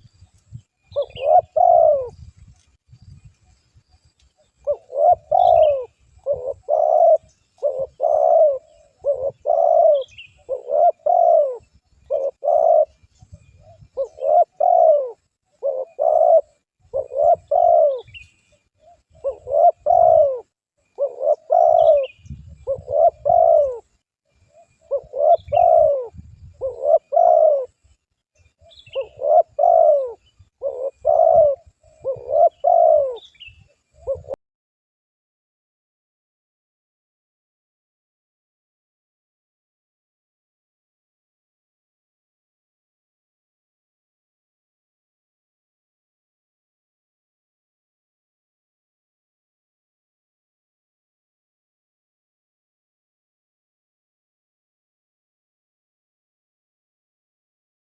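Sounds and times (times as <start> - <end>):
faint high bird chirps: 0.0 - 34.4
dove cooing: 0.8 - 2.3, 4.5 - 18.2, 18.8 - 28.0, 28.6 - 34.4.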